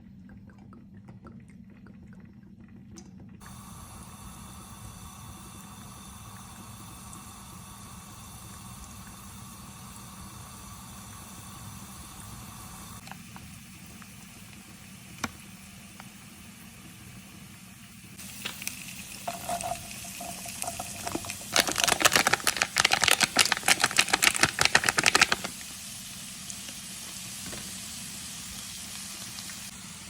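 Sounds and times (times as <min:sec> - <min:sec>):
water hissing: 0:18.2 - 0:30.0.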